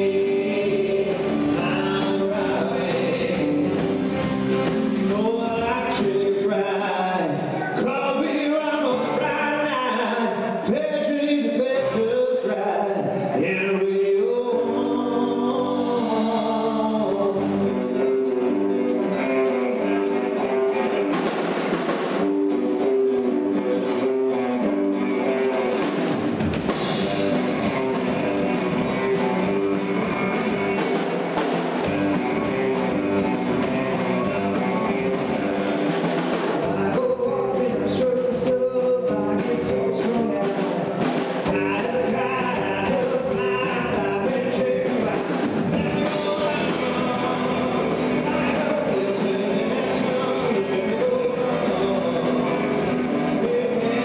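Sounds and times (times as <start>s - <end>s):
person singing: 0.0s - 21.3s, 27.0s - 31.1s, 31.8s - 54.0s
rock band music: 0.0s - 54.0s.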